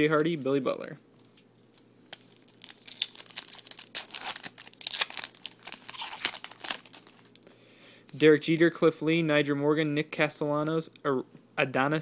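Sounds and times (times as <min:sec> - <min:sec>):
wrapper crinkling and tearing: 0:01.6 - 0:07.4.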